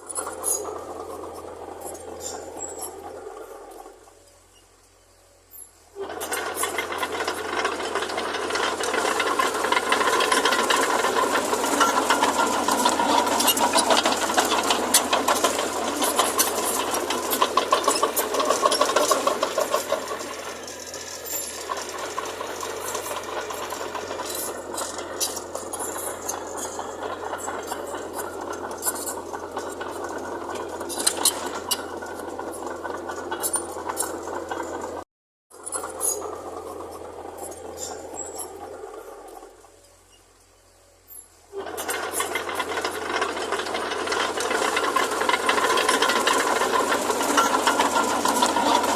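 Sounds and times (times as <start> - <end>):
diesel engine: 0.0 - 48.9
metallic rattling and clattering: 5.7 - 35.0, 41.3 - 48.9.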